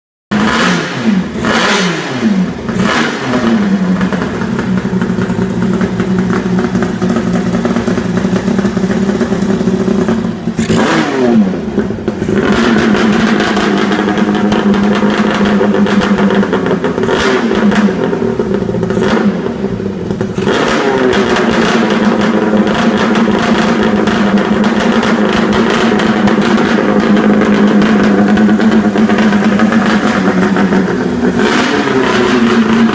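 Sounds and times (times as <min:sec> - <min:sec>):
engine revving: 0:00.3 - 0:32.9
motorcycle engine idling: 0:03.4 - 0:10.6, 0:22.2 - 0:32.9.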